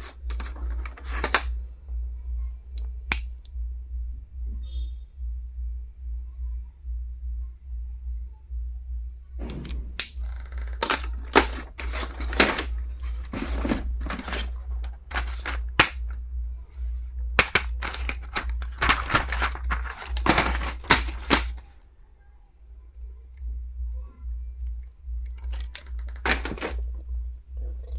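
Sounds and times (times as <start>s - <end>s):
plastic items clicking and knocking: 0.0s - 1.6s, 9.6s - 16.2s, 17.2s - 21.8s, 25.2s - 27.0s
steady low hum: 0.0s - 27.9s.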